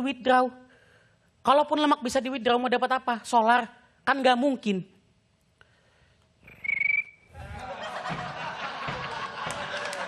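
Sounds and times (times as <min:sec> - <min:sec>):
whistled cricket chirp: 0:06.5 - 0:07.3
audience laughter: 0:07.4 - 0:10.0.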